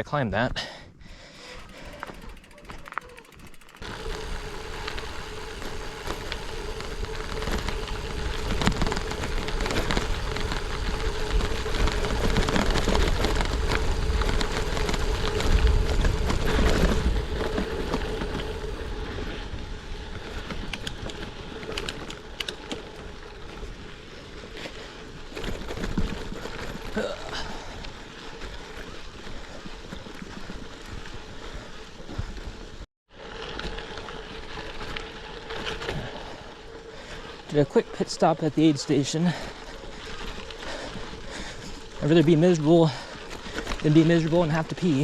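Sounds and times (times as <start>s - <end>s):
tyres crunching over gravel: 1.4s - 45.0s
steady hum: 3.5s - 19.0s
wind rushing over microphone: 3.8s - 21.4s.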